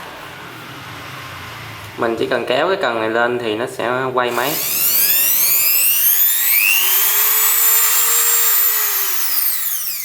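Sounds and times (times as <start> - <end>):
die grinder whining: 4.3 - 10.0.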